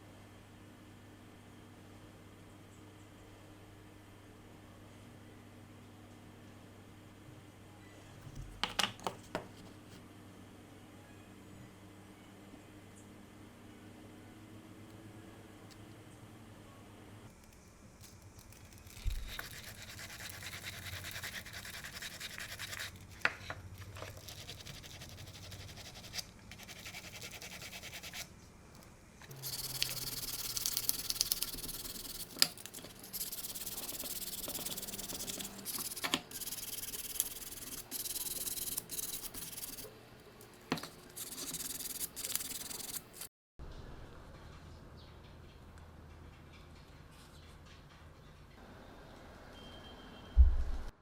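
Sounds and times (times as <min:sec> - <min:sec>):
hand scraping small part: 0:17.4 - 0:28.2, 0:29.3 - 0:43.3.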